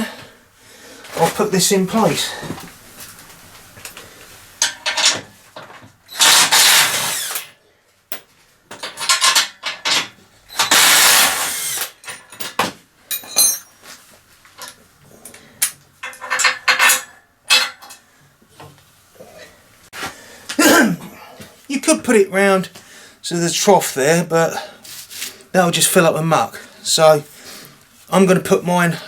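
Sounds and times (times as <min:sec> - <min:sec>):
steel parts clinking: 0:04.6 - 0:05.2, 0:08.1 - 0:13.8, 0:14.6 - 0:18.0.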